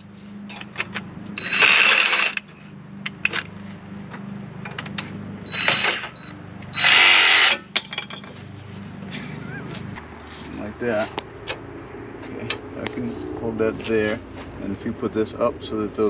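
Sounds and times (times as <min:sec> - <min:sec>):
reciprocating saw cutting metal: 0:06.8 - 0:07.7.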